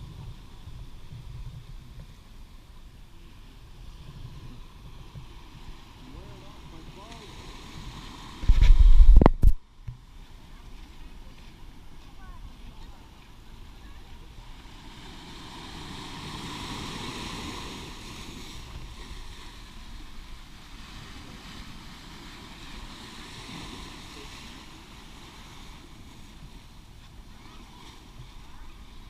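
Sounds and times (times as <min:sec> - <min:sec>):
ocean waves washing on beach: 0:00.0 - 0:29.0
wind rumbling on microphone: 0:00.0 - 0:29.0.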